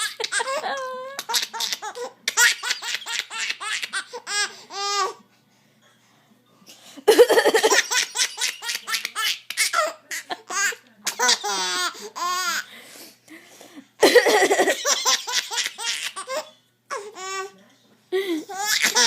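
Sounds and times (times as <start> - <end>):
baby laughing: 0.0 - 5.1, 7.1 - 12.7, 14.0 - 17.5, 18.4 - 19.0.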